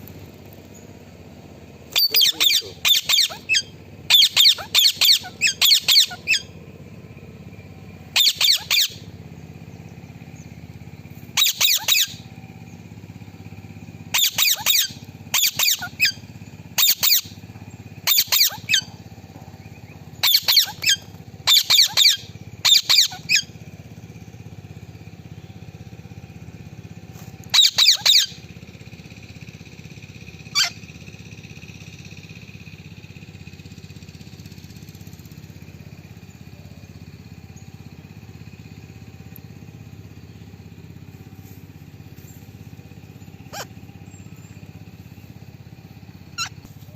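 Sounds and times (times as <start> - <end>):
parakeet squawking: 1.9 - 6.5, 8.2 - 9.0, 11.4 - 12.2, 14.2 - 16.2, 16.8 - 17.3, 18.1 - 18.9, 20.2 - 23.5, 27.5 - 28.4, 30.5 - 30.8, 43.5 - 43.7, 46.4 - 46.6.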